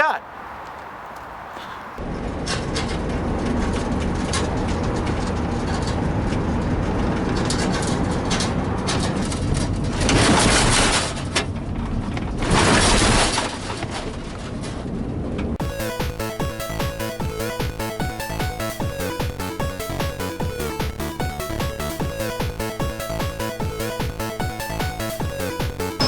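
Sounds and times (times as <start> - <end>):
vehicle engine running: 2.0 - 10.0, 14.9 - 26.0.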